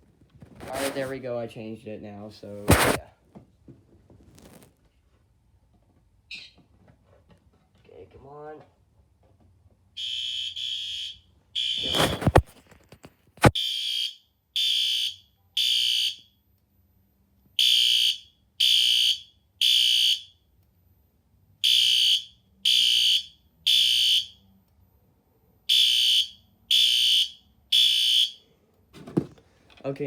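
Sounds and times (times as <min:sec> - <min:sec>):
electronic alarm horn blasts: 0:10.0 - 0:12.3.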